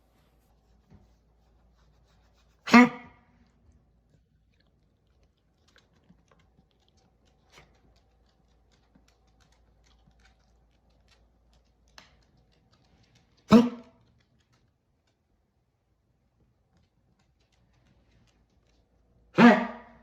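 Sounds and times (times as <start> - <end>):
dog honking cough: 2.6 - 3.2, 13.5 - 13.9, 19.4 - 20.0
faint ticks and clicks: 3.4 - 19.3.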